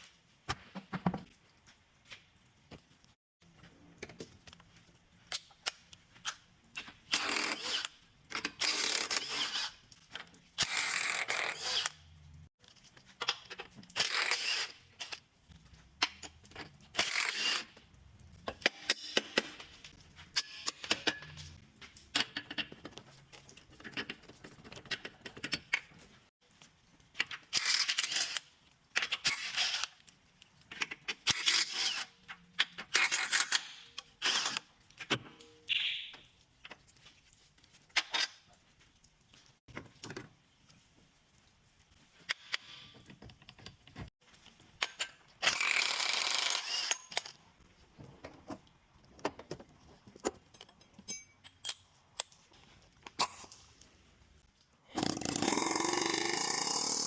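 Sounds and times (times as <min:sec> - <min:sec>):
metallic tool clicks and clinks: 0:50.5 - 0:52.4.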